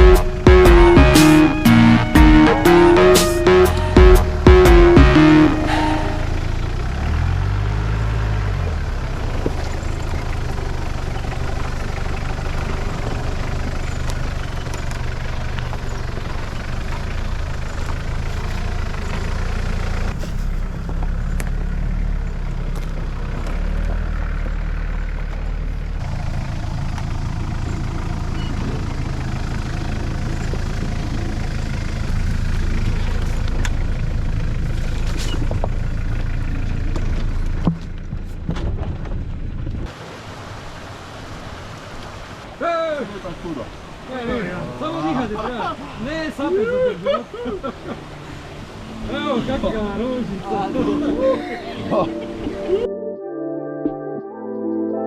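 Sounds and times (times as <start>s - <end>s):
off-road vehicle engine running: 0.0s - 52.9s.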